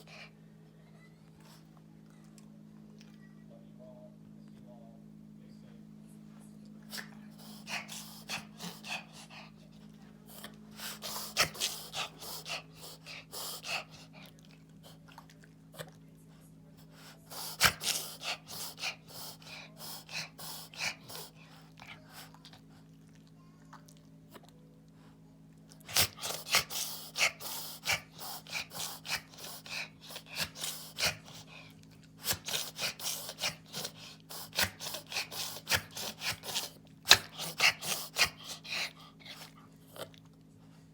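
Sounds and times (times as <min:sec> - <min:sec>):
faint steady hum: 0:00.0 - 0:40.9
pet reverse sneezing: 0:17.0 - 0:21.3, 0:32.2 - 0:38.9.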